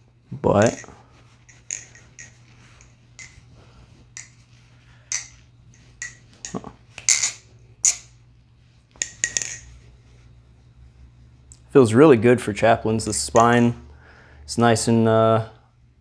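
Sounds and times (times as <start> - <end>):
knife handles clacking: 0.6 - 3.4, 4.2 - 4.4, 5.1 - 8.1, 9.0 - 9.7, 13.3 - 13.7.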